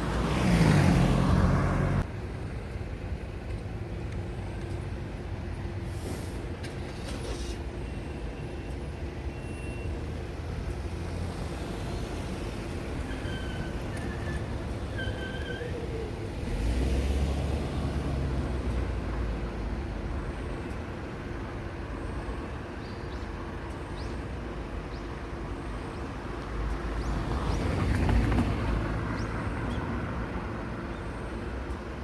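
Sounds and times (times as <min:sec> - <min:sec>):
vehicle passing close: 0:00.0 - 0:02.1, 0:15.8 - 0:18.9
road traffic rumble: 0:00.0 - 0:32.0.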